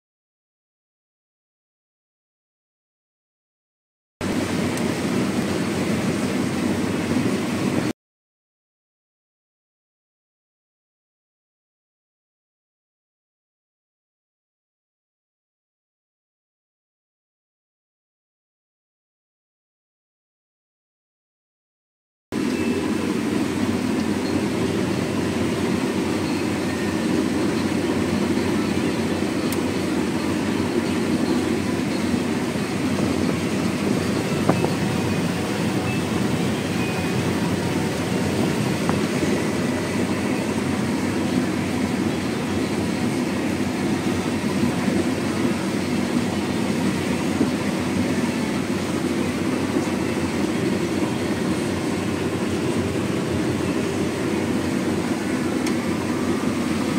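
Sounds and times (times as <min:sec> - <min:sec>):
combine harvester drone: 0:04.2 - 0:07.9, 0:22.3 - 0:56.9.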